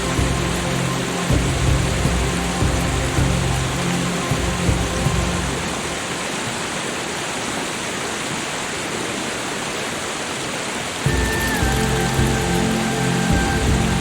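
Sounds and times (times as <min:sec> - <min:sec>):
soft background music: 0:00.0 - 0:07.3, 0:11.0 - 0:14.0
rushing water: 0:00.0 - 0:14.0.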